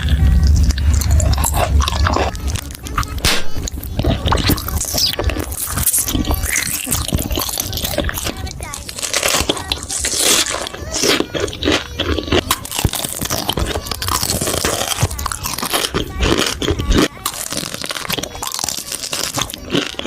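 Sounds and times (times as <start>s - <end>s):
crunchy food chewing: 0.0s - 20.0s.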